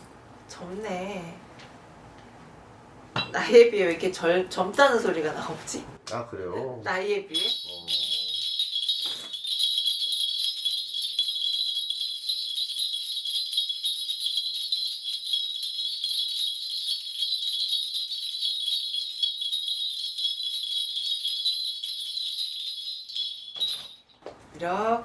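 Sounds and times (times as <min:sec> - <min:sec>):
brass bells jingling: 0:07.3 - 0:24.2.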